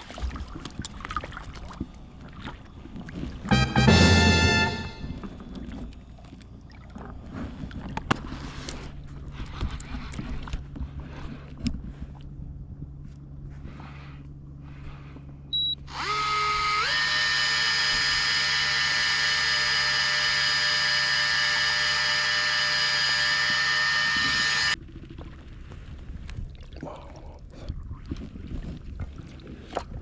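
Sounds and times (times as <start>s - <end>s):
short beep: 3.5s - 5.3s
fishing reel motor whine: 15.8s - 24.8s.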